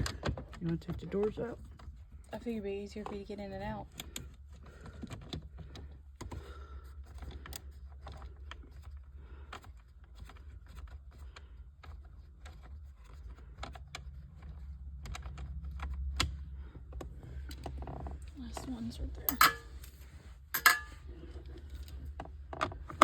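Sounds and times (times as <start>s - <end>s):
steady low rumble: 13.9s - 22.5s.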